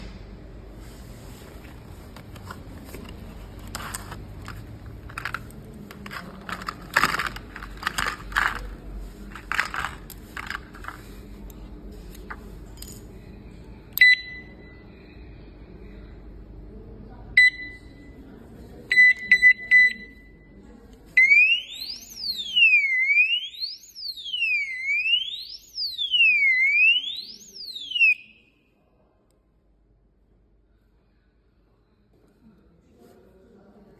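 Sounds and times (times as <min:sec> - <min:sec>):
handling clatter and clicks: 0:01.6 - 0:11.1
alarm siren sweeping: 0:21.2 - 0:28.4.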